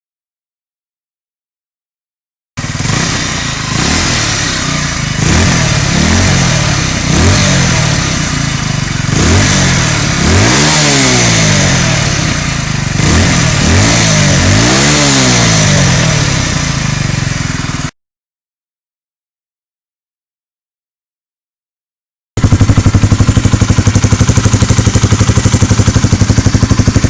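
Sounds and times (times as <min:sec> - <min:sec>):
motorcycle engine revving: 0:02.6 - 0:18.0, 0:22.4 - 0:27.0.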